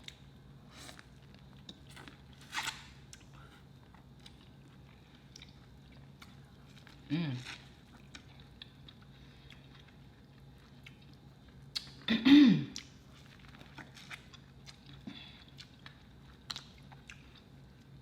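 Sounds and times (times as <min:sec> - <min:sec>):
chewing with wet mouth clicks: 0:03.1 - 0:07.0, 0:07.9 - 0:12.1, 0:12.8 - 0:17.9.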